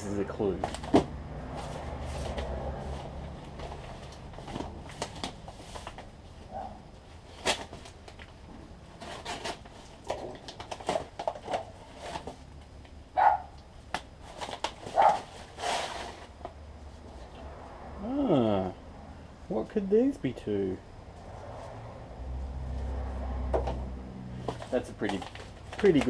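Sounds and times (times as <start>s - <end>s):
cardboard packaging rummaged: 0.4s - 6.1s, 8.9s - 12.4s, 14.2s - 16.4s, 24.4s - 26.0s.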